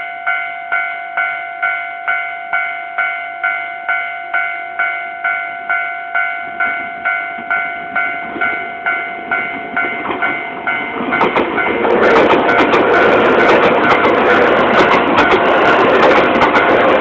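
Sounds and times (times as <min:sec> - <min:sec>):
level crossing alarm bell: 0:00.0 - 0:17.0
approaching train rumble: 0:03.4 - 0:17.0.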